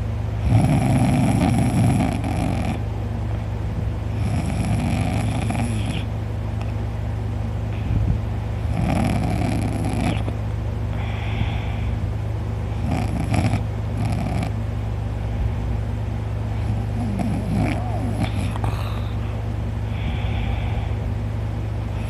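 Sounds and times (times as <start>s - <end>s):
steady low hum: 0.0s - 22.0s
man snoring: 0.4s - 2.8s, 4.2s - 6.1s, 8.7s - 10.3s, 12.8s - 14.5s, 16.6s - 19.2s.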